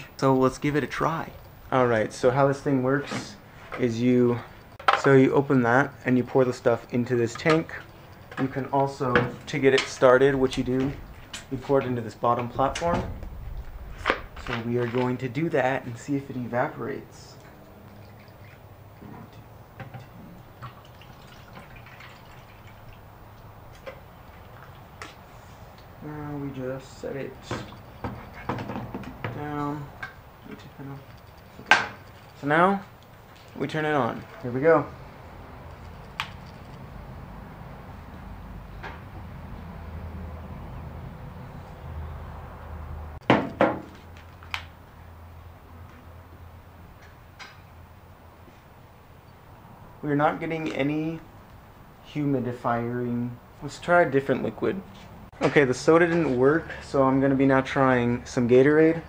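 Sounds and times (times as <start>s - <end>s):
soda pouring and trickling: 17.5s - 19.0s, 20.0s - 26.0s, 29.6s - 34.8s.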